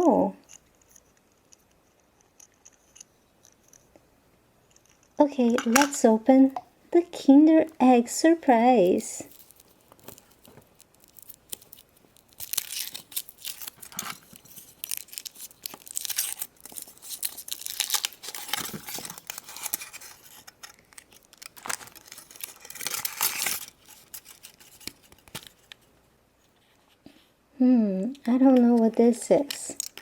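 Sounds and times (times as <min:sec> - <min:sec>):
foil wrapper tearing and crinkling: 0:09.3 - 0:25.8, 0:29.4 - 0:30.0.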